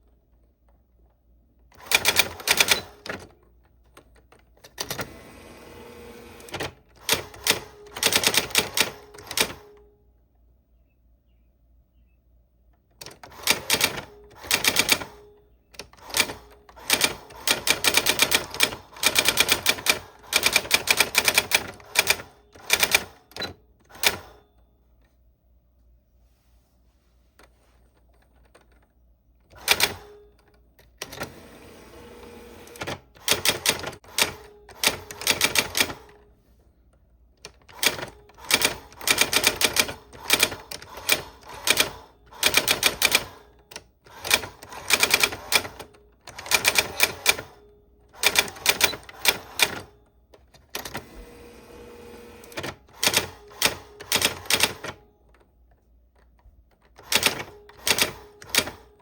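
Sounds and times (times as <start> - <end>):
typewriter key strikes: 52.6 - 55.0.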